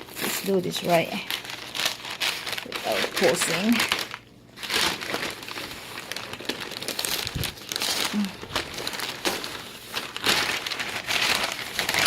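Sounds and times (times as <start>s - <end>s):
wrapping crinkling and rustling: 0.0s - 12.0s.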